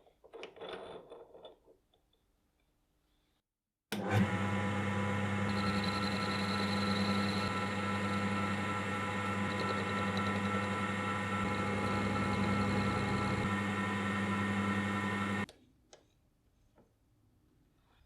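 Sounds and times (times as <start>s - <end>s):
electric motor humming: 4.0s - 15.5s.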